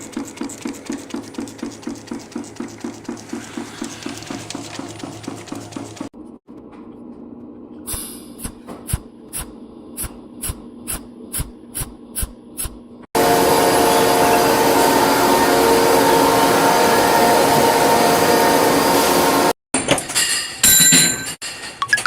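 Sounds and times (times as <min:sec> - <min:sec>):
factory machine sharp strokes: 0:13.2 - 0:19.6
machining noise with whine: 0:13.2 - 0:19.6.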